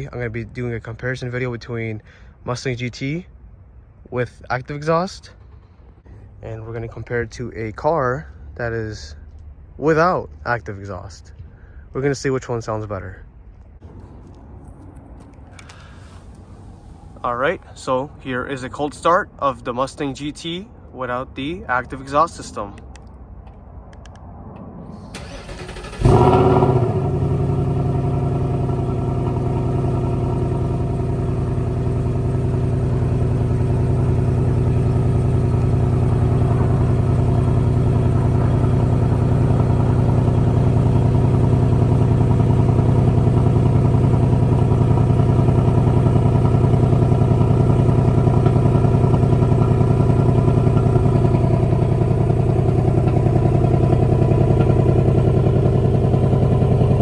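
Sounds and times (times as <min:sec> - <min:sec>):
car engine cold starting and idling: 0:04.8 - 0:06.2, 0:25.0 - 0:57.0.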